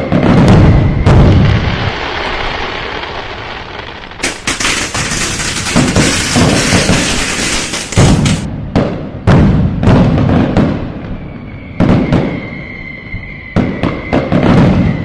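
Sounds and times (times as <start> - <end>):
firecrackers crackling: 0.0 - 11.0
loud bang: 4.2 - 8.5.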